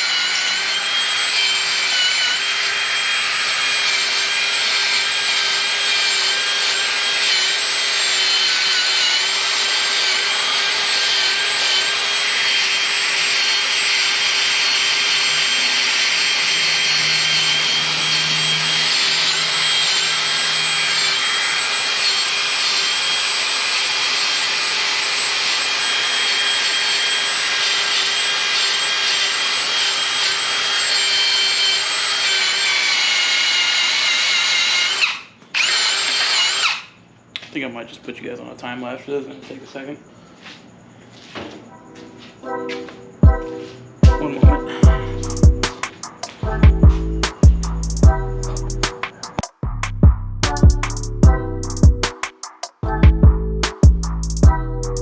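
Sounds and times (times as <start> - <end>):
drill wire brush scrubbing metal: 0.0 - 36.8, 44.8 - 46.5, 47.2 - 49.5.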